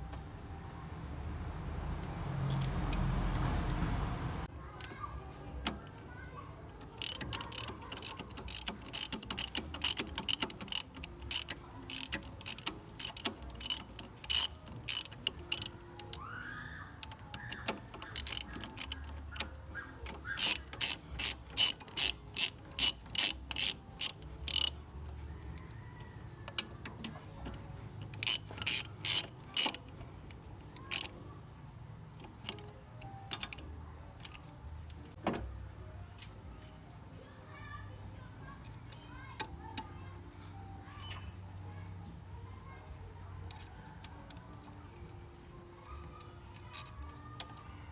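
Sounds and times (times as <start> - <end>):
ratchet wrench clicking: 1.9 - 3.9, 6.8 - 16.3, 17.0 - 25.6, 28.0 - 30.0, 30.7 - 31.2.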